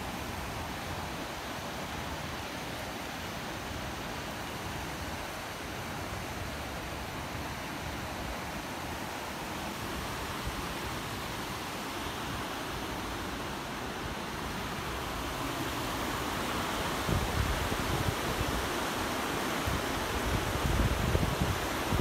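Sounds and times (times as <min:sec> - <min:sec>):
rushing wind: 0:00.0 - 0:22.0
wind buffeting microphone: 0:16.8 - 0:18.7, 0:19.6 - 0:22.0.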